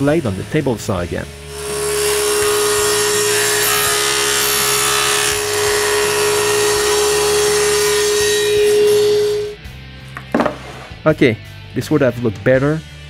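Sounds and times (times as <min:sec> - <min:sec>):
table saw cutting: 0:00.0 - 0:09.6.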